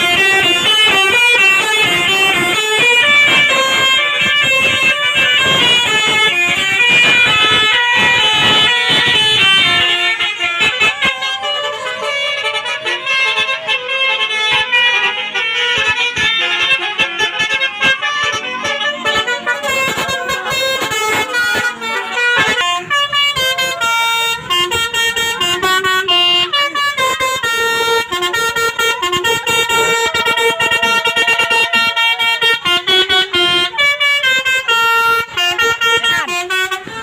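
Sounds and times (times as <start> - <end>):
multi-tone bus horn melody: 0.0 - 37.0.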